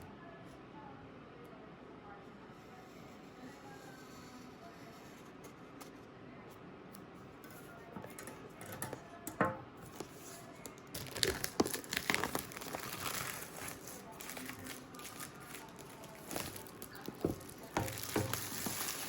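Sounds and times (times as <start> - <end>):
plastic wrap crinkling and tearing: 10.8 - 19.0
knife cutting plastic wrap: 11.0 - 19.0.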